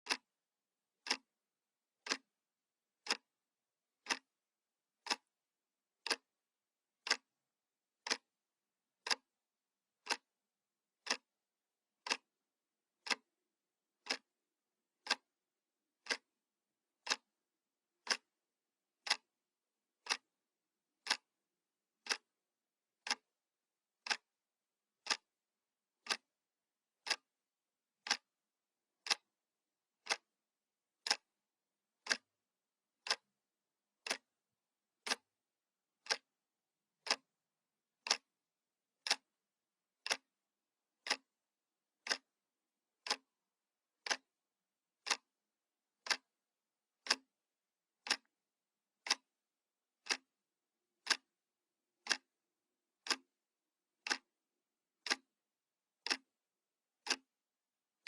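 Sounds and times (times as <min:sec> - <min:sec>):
clock ticking: 0:00.0 - 0:00.3, 0:01.0 - 0:01.3, 0:02.0 - 0:02.3, 0:03.0 - 0:03.3, 0:04.0 - 0:04.3, 0:05.0 - 0:05.3, 0:06.0 - 0:06.3, 0:07.0 - 0:07.3, 0:08.0 - 0:08.3, 0:09.0 - 0:09.3, 0:10.0 - 0:10.2, 0:11.0 - 0:11.3, 0:12.0 - 0:12.3, 0:13.0 - 0:13.3, 0:14.0 - 0:14.3, 0:15.0 - 0:15.3, 0:16.0 - 0:16.3, 0:17.0 - 0:17.3, 0:18.0 - 0:18.4, 0:19.0 - 0:19.3, 0:20.0 - 0:20.3, 0:21.0 - 0:21.3, 0:22.0 - 0:22.3, 0:23.0 - 0:23.2, 0:24.0 - 0:24.3, 0:25.0 - 0:25.3, 0:26.0 - 0:26.3, 0:27.0 - 0:27.3, 0:28.0 - 0:28.3, 0:29.0 - 0:29.3, 0:30.0 - 0:30.3, 0:31.0 - 0:31.3, 0:32.0 - 0:32.3, 0:33.0 - 0:33.3, 0:34.0 - 0:34.3, 0:35.0 - 0:35.3, 0:36.0 - 0:36.3, 0:37.0 - 0:37.3, 0:38.0 - 0:38.3, 0:39.0 - 0:39.3, 0:40.0 - 0:40.3, 0:41.0 - 0:41.3, 0:42.0 - 0:42.3, 0:43.0 - 0:43.3, 0:44.0 - 0:44.3, 0:45.0 - 0:45.3, 0:46.0 - 0:46.3, 0:47.0 - 0:47.3, 0:48.0 - 0:48.3, 0:49.0 - 0:49.3, 0:50.0 - 0:50.3, 0:51.0 - 0:51.3, 0:52.0 - 0:52.3, 0:53.0 - 0:53.2, 0:54.0 - 0:54.3, 0:55.0 - 0:55.3, 0:56.0 - 0:56.3, 0:57.0 - 0:57.3.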